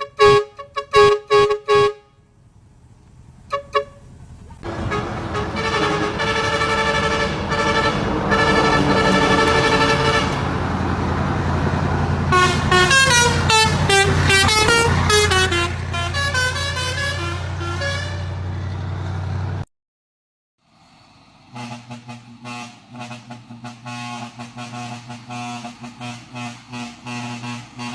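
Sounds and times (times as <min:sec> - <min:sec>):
vehicle air horns: 0:00.0 - 0:02.3, 0:03.5 - 0:10.9, 0:12.2 - 0:18.5, 0:21.5 - 0:27.9
low engine drone: 0:00.0 - 0:19.6.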